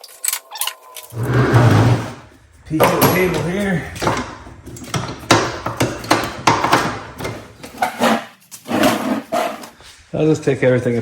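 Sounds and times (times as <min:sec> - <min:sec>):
tools knocking and clanking: 0:02.8 - 0:08.2.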